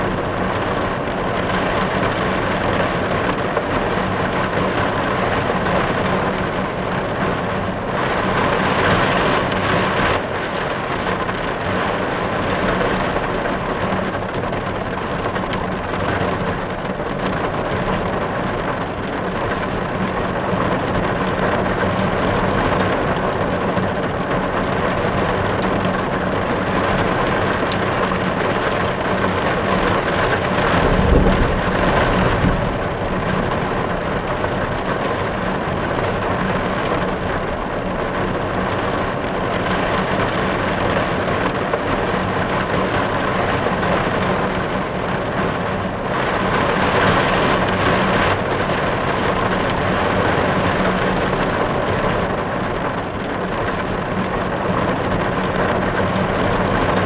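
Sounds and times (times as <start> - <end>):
rain on car roof: 0.0 - 57.0
low rumble: 30.0 - 35.5.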